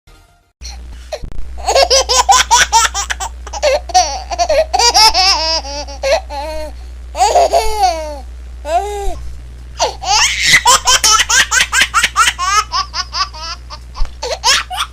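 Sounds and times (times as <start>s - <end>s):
baby laughing and squealing: 1.6s - 6.6s, 7.2s - 8.8s, 9.8s - 14.9s.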